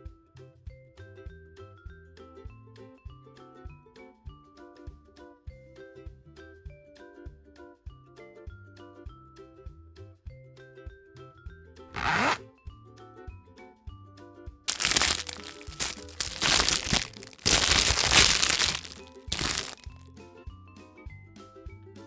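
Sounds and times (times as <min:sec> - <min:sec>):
wrapper and shell crinkling: 0:12.0 - 0:12.4, 0:14.7 - 0:20.0.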